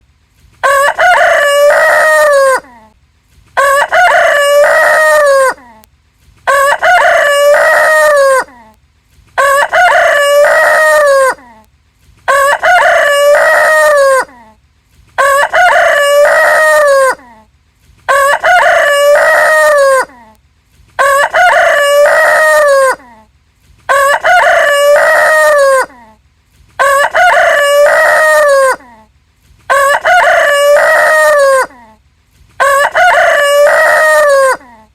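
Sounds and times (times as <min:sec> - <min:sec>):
rooster crowing: 0:00.6 - 0:02.8, 0:03.6 - 0:05.6, 0:06.5 - 0:08.5, 0:09.4 - 0:11.4, 0:12.3 - 0:14.3, 0:15.2 - 0:17.2, 0:18.1 - 0:20.1, 0:21.0 - 0:23.1, 0:23.9 - 0:26.0, 0:26.8 - 0:28.9, 0:29.7 - 0:31.8, 0:32.6 - 0:34.8.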